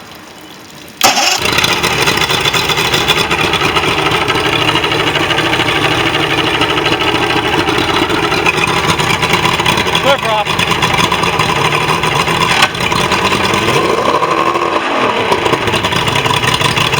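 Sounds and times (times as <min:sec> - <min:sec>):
outboard motor idling: 0:01.0 - 0:16.9.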